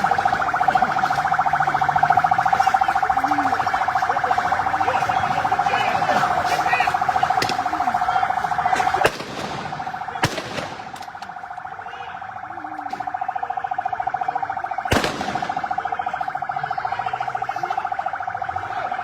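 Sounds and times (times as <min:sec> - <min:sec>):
siren with rapidly pulsing tone: 0:00.0 - 0:19.0
sharp cracks of gunfire: 0:08.8 - 0:11.1, 0:14.9 - 0:15.8.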